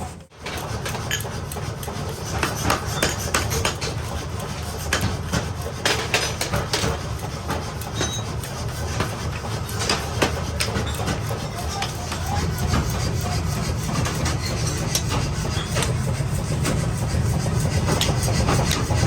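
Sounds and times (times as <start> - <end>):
hammers striking steel: 0.8 - 16.0.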